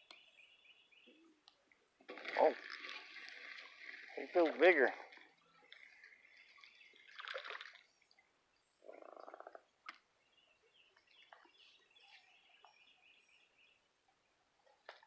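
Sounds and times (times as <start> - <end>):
soft splash-like rustle: 2.0 - 8.3
faint bird chirps: 7.8 - 14.8.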